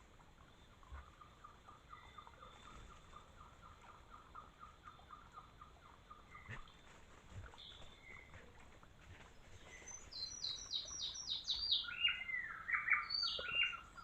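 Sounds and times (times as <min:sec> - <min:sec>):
higher bird chirps: 0:09.6 - 0:14.0.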